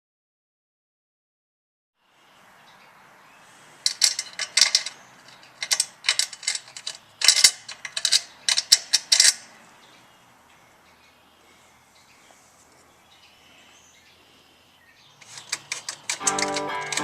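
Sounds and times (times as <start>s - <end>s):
ratchet wrench clicking: 15.2s - 17.0s.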